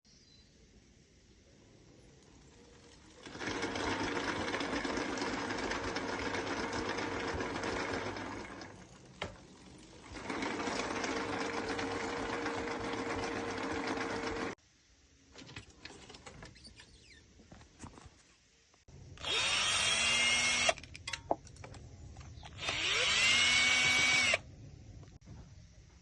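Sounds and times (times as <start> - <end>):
electric motor with rattling gear: 2.8 - 14.6, 19.2 - 20.8, 22.5 - 24.4.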